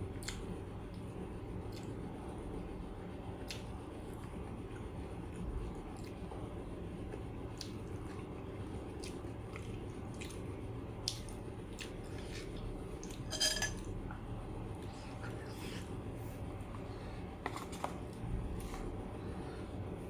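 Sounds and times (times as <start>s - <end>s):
person chewing food: 8.9s - 13.3s.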